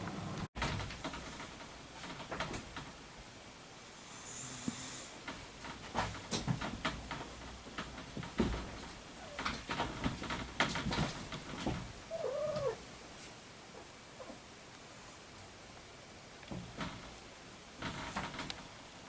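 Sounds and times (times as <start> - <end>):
kitten mewing: 12.1 - 12.8
soft clicks and knocks: 17.8 - 18.8.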